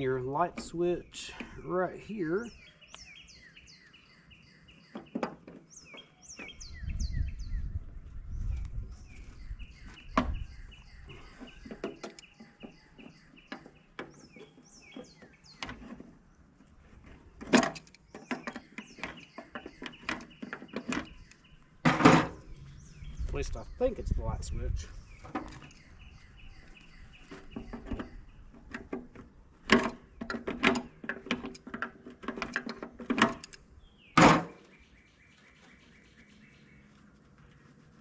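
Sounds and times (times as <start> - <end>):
songbirds chirping: 0.0 - 38.0
low rumble: 22.4 - 24.8
sharp clicks and knocks: 27.3 - 33.6.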